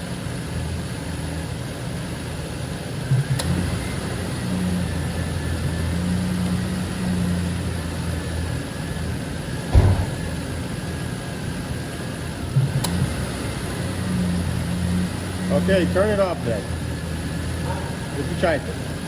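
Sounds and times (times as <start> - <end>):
pickup engine idling: 0.0 - 19.0
short thump: 9.7 - 10.6.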